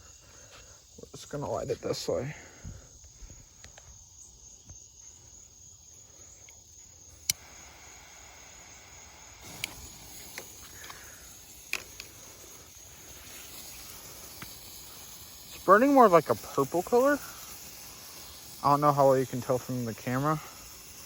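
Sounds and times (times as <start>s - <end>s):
crickets chirping: 0.0s - 21.0s
sparkler fizzing hiss: 6.2s - 21.0s
sharp clicks: 7.2s - 7.5s, 9.4s - 12.4s.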